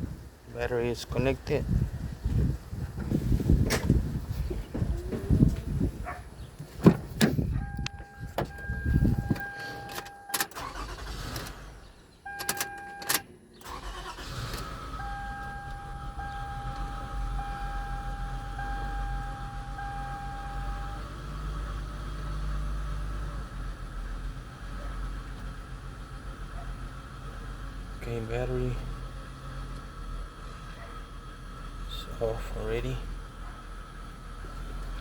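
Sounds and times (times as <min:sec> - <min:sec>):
car engine starting and idling: 0:00.0 - 0:35.0
warning chime beeping: 0:07.6 - 0:10.4, 0:15.0 - 0:21.0.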